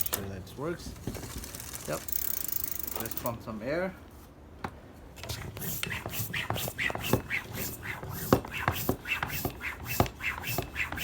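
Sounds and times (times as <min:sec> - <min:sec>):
bicycle pump strokes: 0:01.1 - 0:03.3, 0:05.3 - 0:11.0.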